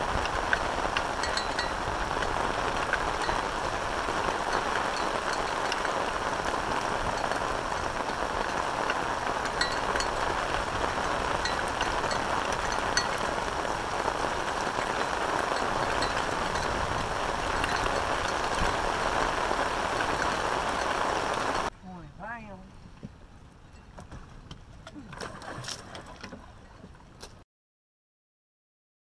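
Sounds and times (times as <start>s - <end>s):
raindrop ticks: 0.0s - 21.7s
rain falling: 0.0s - 23.6s.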